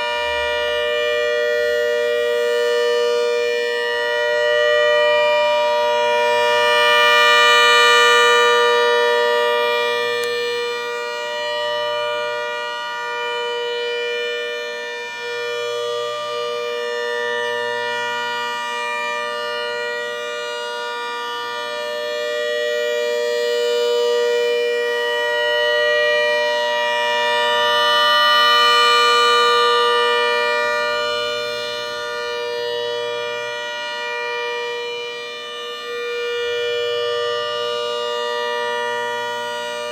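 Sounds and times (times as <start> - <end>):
siren steady tone: 0.0 - 39.9.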